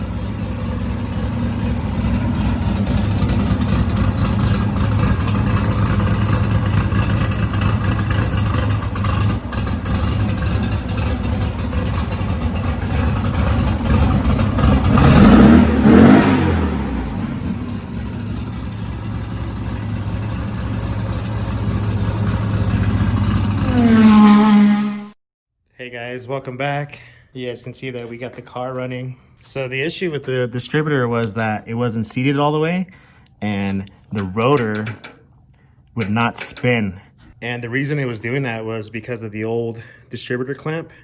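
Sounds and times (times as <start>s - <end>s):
car engine idling and revving: 0.0s - 25.2s.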